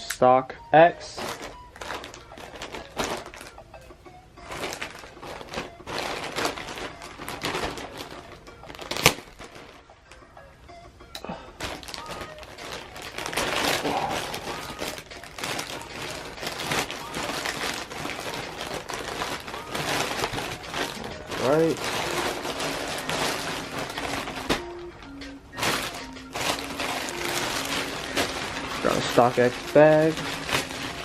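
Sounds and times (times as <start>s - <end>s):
package and plastic bag rustling: 1.0s - 3.6s, 4.4s - 10.2s, 11.3s - 31.0s.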